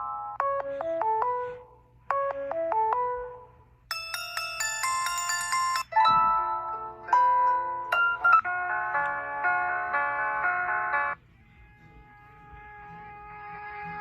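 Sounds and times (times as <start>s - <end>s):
phone ringtones: 3.9s - 11.2s.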